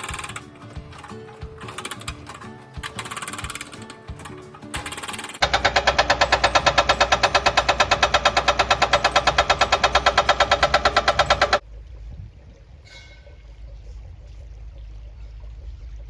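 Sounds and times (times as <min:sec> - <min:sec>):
hydraulic breaker hammering: 0:00.0 - 0:11.6.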